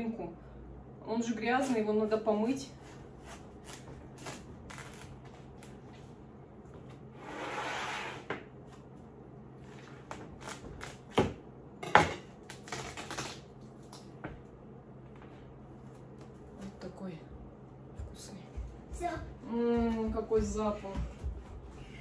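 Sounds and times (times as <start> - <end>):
knife cutting watermelon: 2.7 - 5.8.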